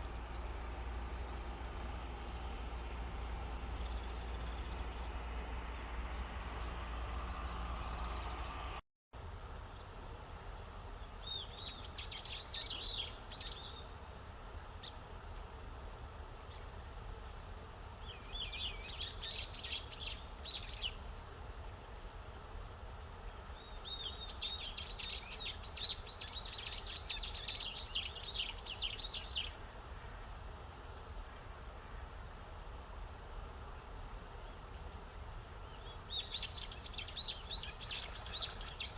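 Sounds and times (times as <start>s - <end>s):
low background rumble: 0.0s - 12.0s
sparrows chirping: 11.2s - 13.9s, 18.0s - 21.0s, 23.6s - 29.6s, 35.6s - 38.9s.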